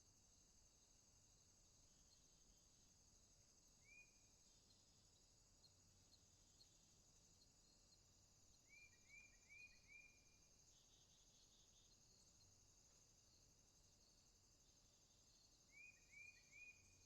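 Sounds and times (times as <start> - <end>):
insects trilling: 0.0 - 17.0
bird chirping: 3.6 - 17.0.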